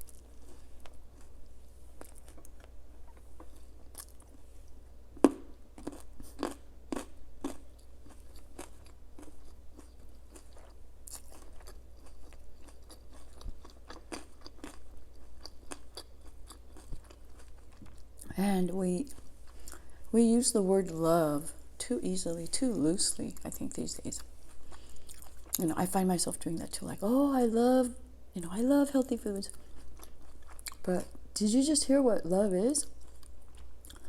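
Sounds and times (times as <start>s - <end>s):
person chewing crisp food: 0.0s - 18.3s, 19.1s - 20.1s, 24.2s - 25.6s, 29.5s - 30.9s, 32.9s - 34.0s.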